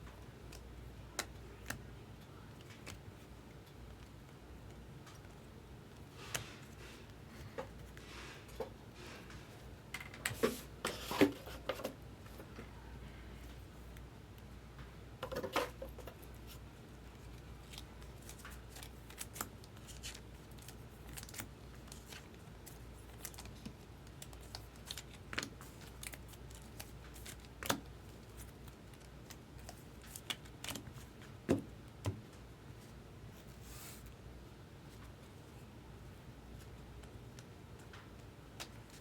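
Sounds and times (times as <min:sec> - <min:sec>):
cards and foil packs handled: 0:15.3 - 0:31.4.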